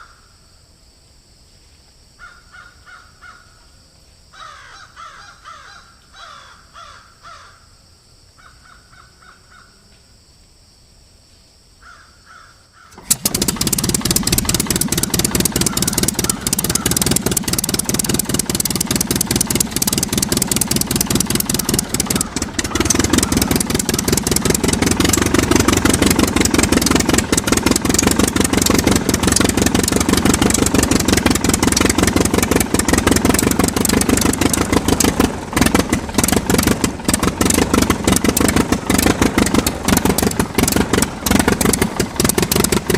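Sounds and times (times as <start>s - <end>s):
crow cawing: 2.2s - 3.6s, 4.4s - 7.7s, 11.8s - 13.0s
small diesel engine clattering: 12.9s - 42.9s.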